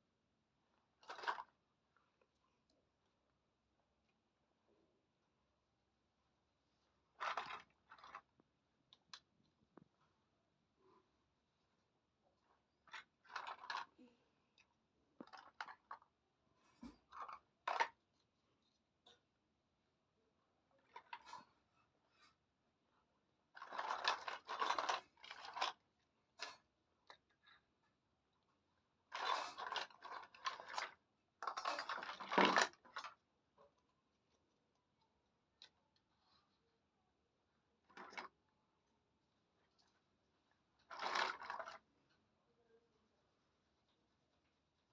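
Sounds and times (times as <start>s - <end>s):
toy kitchen set clicking and rustling: 0.8s - 2.4s, 7.1s - 10.0s, 12.6s - 16.2s, 16.9s - 19.3s, 20.8s - 21.7s, 23.4s - 27.8s, 28.8s - 36.1s, 37.7s - 38.5s, 39.7s - 42.2s
toy pieces clicking and scraping: 12.9s - 14.0s, 23.6s - 25.8s, 29.1s - 33.2s.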